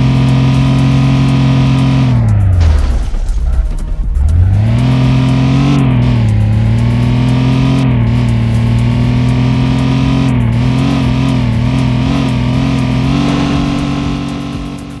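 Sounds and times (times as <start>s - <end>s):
car engine and exhaust droning: 0.0s - 15.0s.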